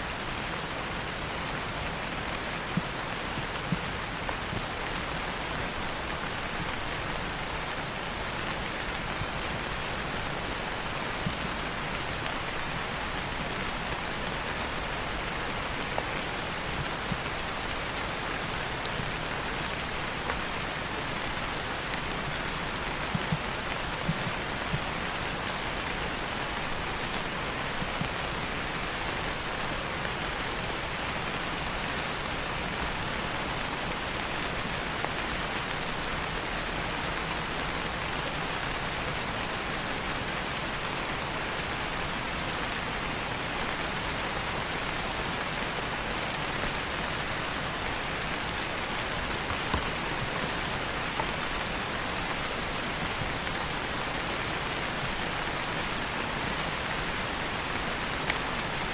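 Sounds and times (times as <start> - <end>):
steady rain: 0.0 - 58.9.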